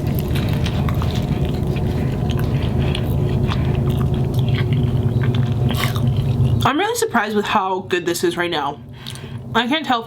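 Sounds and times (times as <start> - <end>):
wet chewing and biting: 0.0 - 6.7
steady low hum: 0.0 - 10.0.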